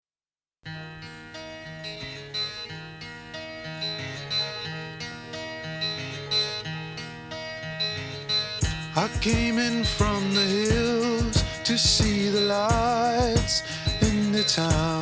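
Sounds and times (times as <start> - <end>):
rock music with guitar and bass: 8.6 - 15.0.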